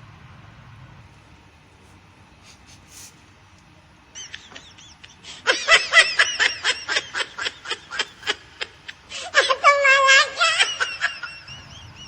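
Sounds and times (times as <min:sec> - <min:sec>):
high-pitched laughter: 0:04.2 - 0:12.0.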